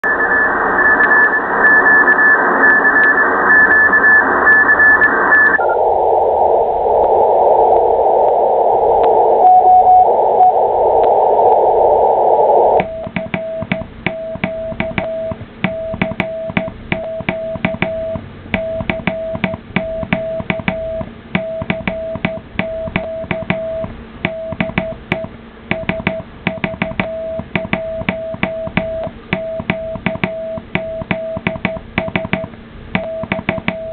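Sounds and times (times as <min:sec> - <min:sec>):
radio receiver hiss: 0:05.2 - 0:33.9
keying clicks: 0:12.8 - 0:33.9
morse code tone: 0:12.8 - 0:33.9.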